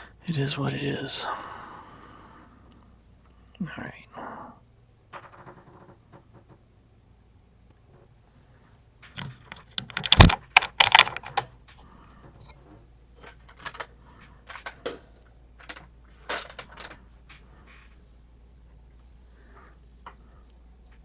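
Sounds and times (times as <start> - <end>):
lock picking clicks: 9.7 - 11.5.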